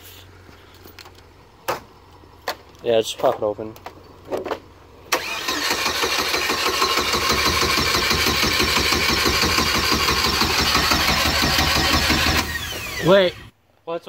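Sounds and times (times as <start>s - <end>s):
starter motor cranking engine: 5.1s - 13.5s.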